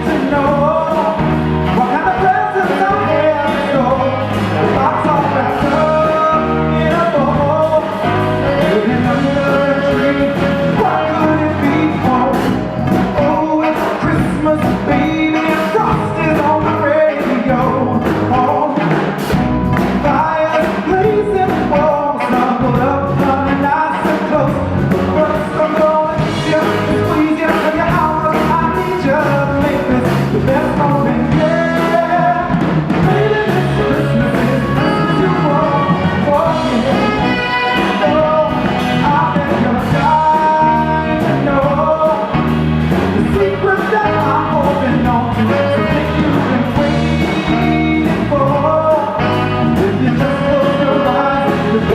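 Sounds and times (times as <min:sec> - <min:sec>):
drums beating: 0:00.0 - 0:51.9
live band playing: 0:00.0 - 0:51.9
person singing lead vocals: 0:00.0 - 0:51.9.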